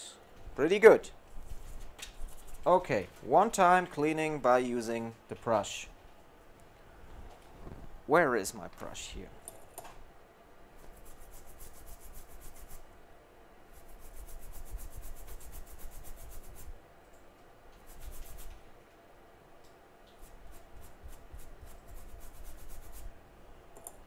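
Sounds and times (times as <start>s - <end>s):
small brush scrubbing: 1.4s - 2.7s, 10.8s - 12.8s, 13.7s - 16.8s, 17.8s - 18.6s, 20.1s - 23.1s.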